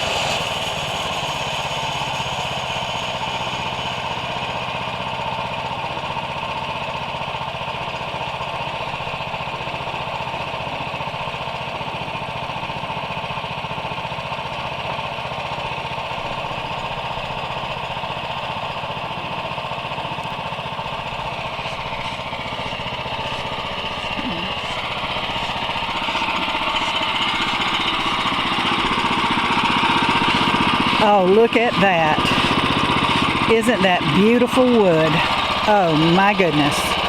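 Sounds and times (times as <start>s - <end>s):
gasoline engine running under load: 0.0s - 37.0s
band saw blade cutting log: 21.0s - 37.0s.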